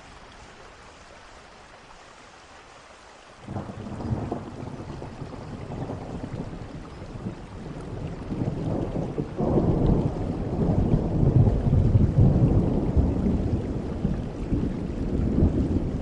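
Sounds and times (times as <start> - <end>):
rain falling: 0.0 - 16.0
low roll of thunder: 3.4 - 16.0.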